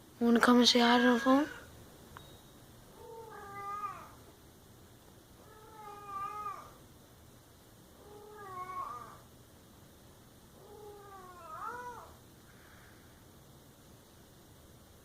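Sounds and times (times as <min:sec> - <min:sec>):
cat meowing: 0:03.0 - 0:04.2, 0:05.4 - 0:06.8, 0:08.0 - 0:09.2, 0:10.6 - 0:12.2.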